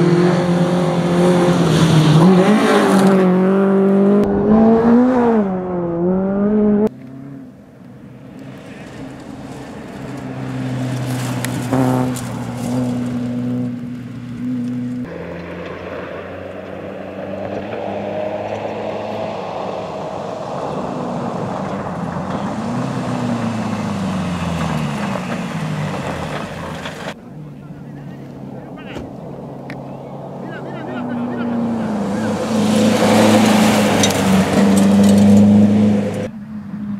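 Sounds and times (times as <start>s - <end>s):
rally car engine: 0.0s - 36.9s
tyres on gravel: 8.4s - 36.2s.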